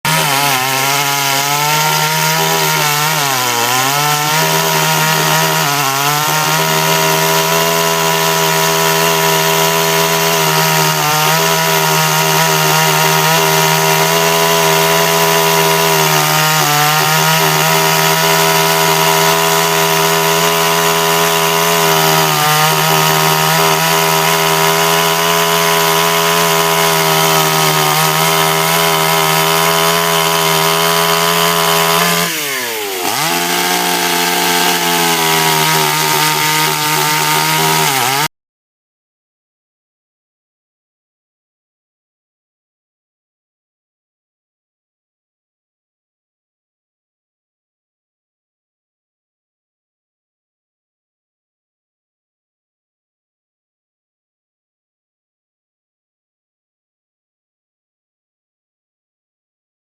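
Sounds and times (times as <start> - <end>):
chainsaw cutting wood: 0.0 - 38.4.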